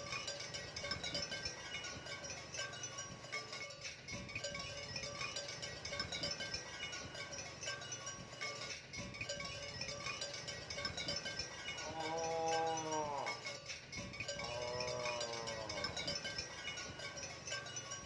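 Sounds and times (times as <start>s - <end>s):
background music with chimes: 0.0s - 18.0s
cattle mooing: 11.8s - 13.4s, 14.4s - 16.0s.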